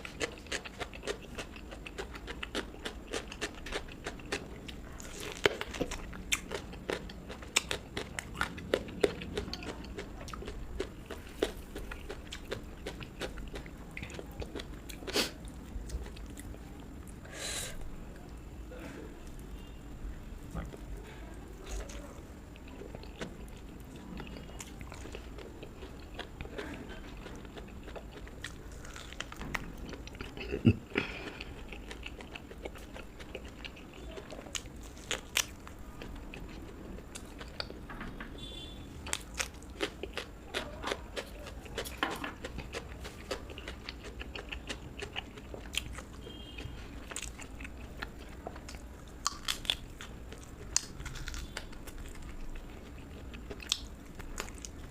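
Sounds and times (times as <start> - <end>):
person chewing crunchy food: 0.0 - 17.3, 20.5 - 54.9.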